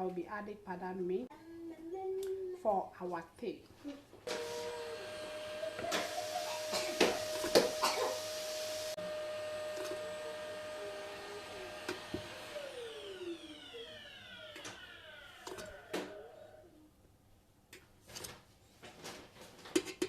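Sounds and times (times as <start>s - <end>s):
vacuum cleaner running: 4.2s - 16.6s.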